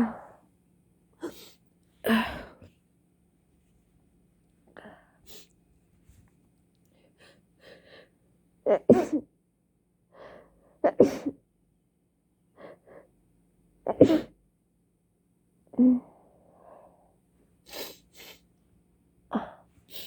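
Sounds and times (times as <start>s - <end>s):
person sneezing: 8.7s - 9.2s, 10.9s - 11.4s, 13.9s - 14.3s.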